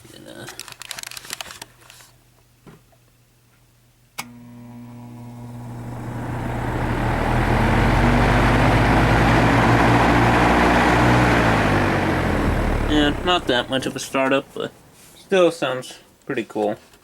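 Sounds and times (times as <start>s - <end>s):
box fan motor hum: 4.3s - 14.2s
fan air rushing: 5.2s - 14.4s.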